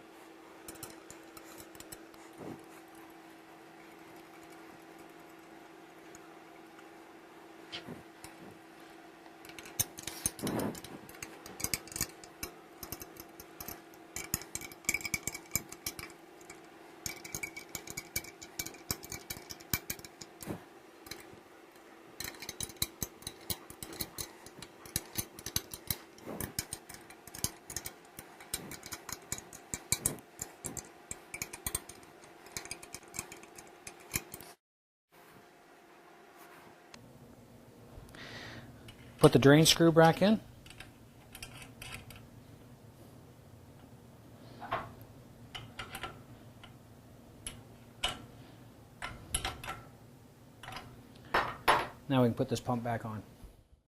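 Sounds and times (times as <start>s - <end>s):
steady low hum: 0.0s - 34.6s, 35.2s - 53.8s
screwdriver and metal parts clicking: 0.6s - 2.2s, 9.4s - 21.4s, 22.2s - 34.6s, 40.6s - 42.3s, 45.5s - 46.8s, 47.4s - 48.3s, 49.0s - 49.9s, 50.6s - 51.3s.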